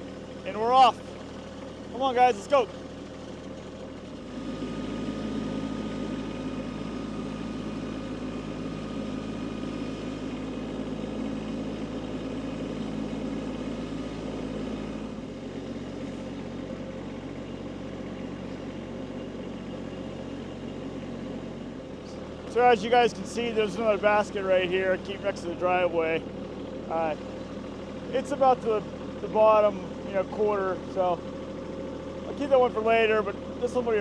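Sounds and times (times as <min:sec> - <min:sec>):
tractor diesel engine running: 0:00.0 - 0:34.0.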